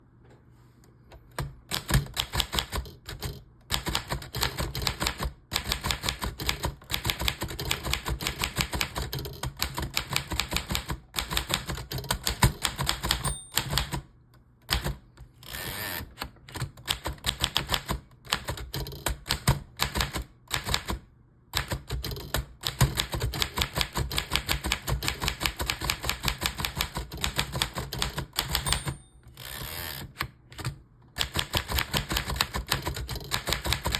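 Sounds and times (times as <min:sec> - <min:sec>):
typewriter keys striking: 0:01.4 - 0:15.0, 0:16.5 - 0:21.0, 0:21.6 - 0:29.0, 0:30.6 - 0:33.9
typewriter bell ring: 0:12.9 - 0:14.0, 0:28.4 - 0:29.2.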